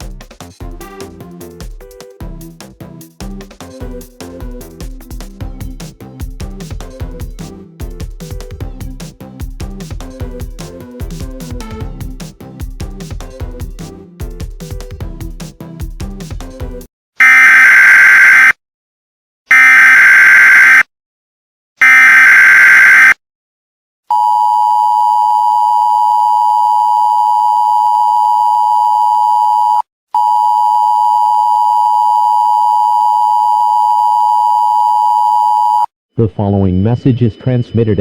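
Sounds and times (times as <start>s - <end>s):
music: 0.0s - 16.9s.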